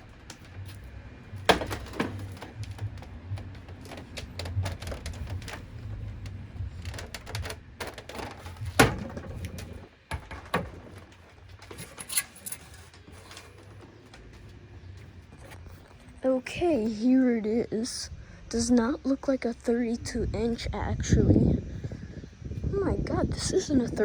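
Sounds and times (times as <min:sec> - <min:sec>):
low rumble: 0:00.0 - 0:09.9
tv knocking against table: 0:01.4 - 0:05.4.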